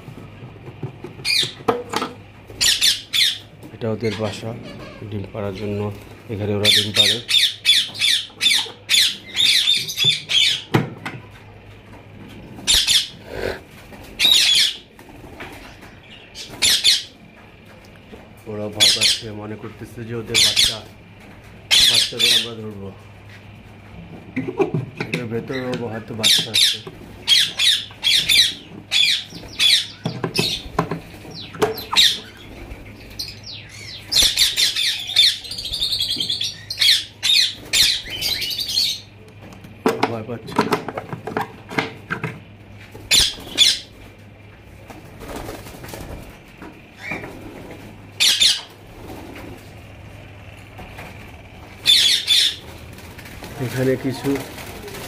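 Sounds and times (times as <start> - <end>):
parakeets squawking: 1.2 - 1.7, 2.5 - 10.7, 12.6 - 17.3, 18.6 - 21.0, 21.6 - 22.9, 25.4 - 39.2, 42.9 - 44.1, 46.9 - 49.6, 51.0 - 55.0.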